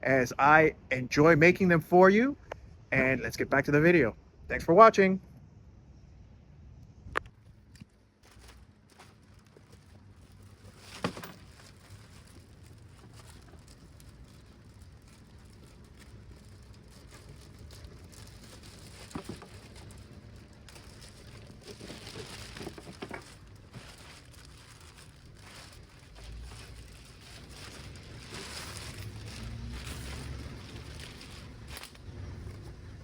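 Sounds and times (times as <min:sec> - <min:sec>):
plastic wrapping crinkling: 0:07.6 - 0:33.0.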